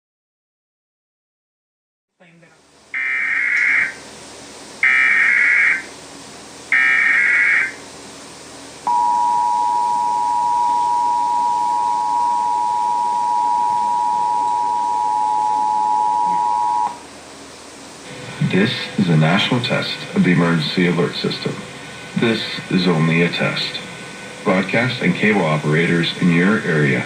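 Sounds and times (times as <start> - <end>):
two-tone alert signal: 8.9 - 17.0.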